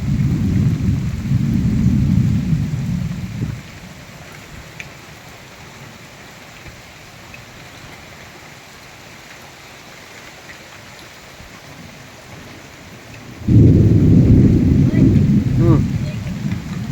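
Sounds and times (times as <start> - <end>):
steady rain falling: 0.0 - 16.9
loud low rumble: 13.4 - 16.9.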